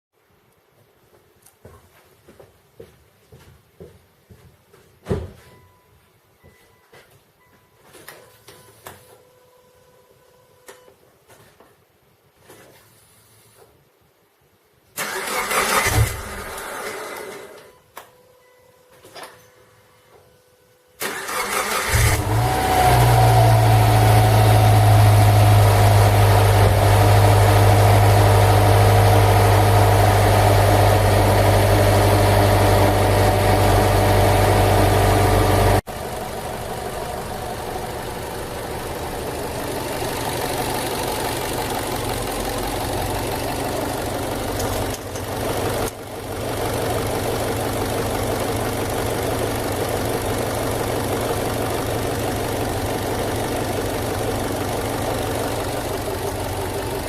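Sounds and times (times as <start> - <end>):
car engine starting and idling: 15.0 - 17.6, 21.0 - 57.0.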